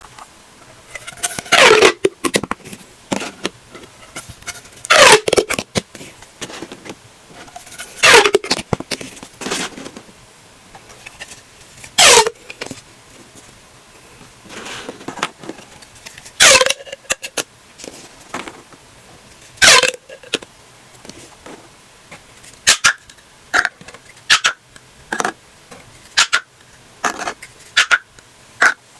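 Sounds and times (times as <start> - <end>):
plastic pop tube crackling sweep: 1.2 - 3.6, 4.2 - 5.9, 6.5 - 10.1.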